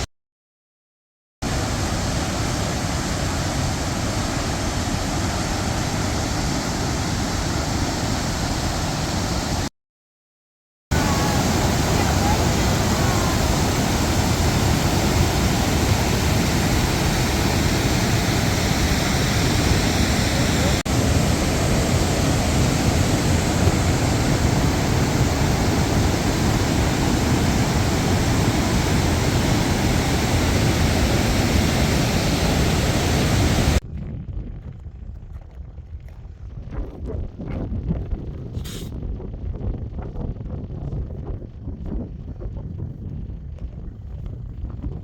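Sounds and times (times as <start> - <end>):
waterfall rushing: 1.5 - 9.7, 10.9 - 33.8.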